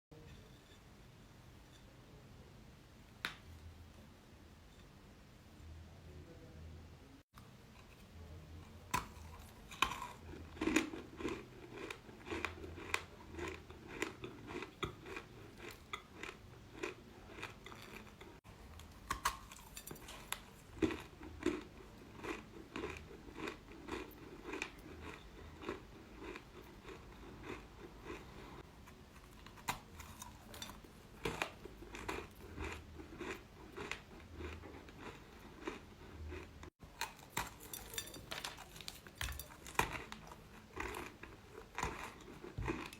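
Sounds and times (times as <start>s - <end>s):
person chewing crunchy chalk: 9.0s - 42.9s.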